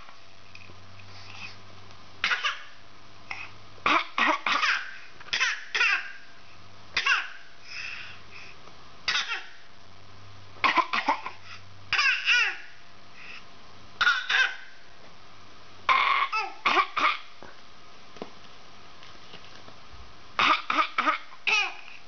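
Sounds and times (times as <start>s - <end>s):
baby coughing: 2.2s - 6.3s, 7.0s - 7.6s, 9.1s - 9.7s, 10.6s - 12.8s, 14.0s - 14.8s, 15.9s - 17.4s, 20.4s - 22.0s
baby babbling: 12.0s - 12.8s, 21.0s - 22.0s.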